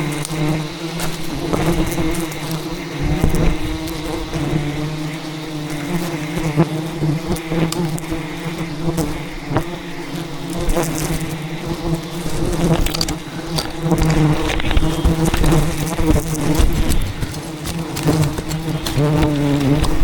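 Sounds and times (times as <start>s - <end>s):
swarm of bees buzzing: 0.0s - 20.0s
bees ticking against camera: 5.7s - 9.8s, 10.6s - 20.0s.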